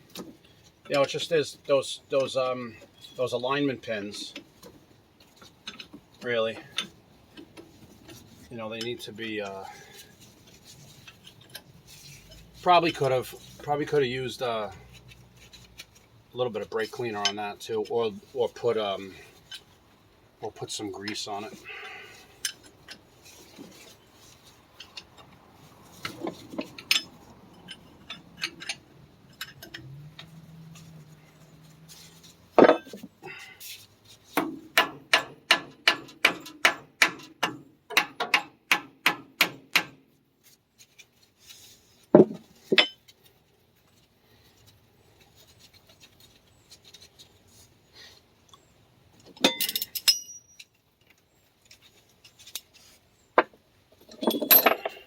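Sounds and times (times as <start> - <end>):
metal clinks and knocks: 26.0 - 31.4, 32.0 - 33.2, 42.1 - 43.2, 49.2 - 52.7, 53.4 - 55.0
metal clatter: 54.0 - 55.0.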